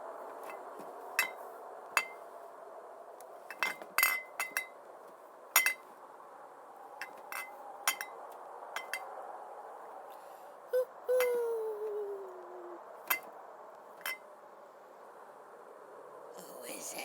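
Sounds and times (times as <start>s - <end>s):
hard objects clinking: 7.0s - 8.1s.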